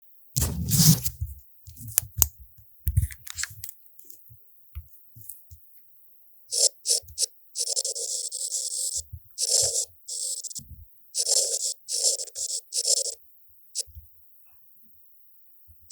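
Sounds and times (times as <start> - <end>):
pen scribbling: 0.4 - 1.2, 6.5 - 10.6, 11.2 - 13.2.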